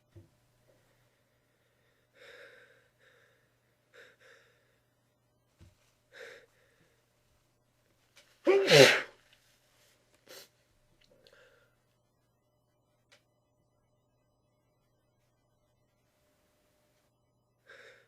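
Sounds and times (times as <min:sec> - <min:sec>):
person gasping before sneeze: 0:08.4 - 0:09.2.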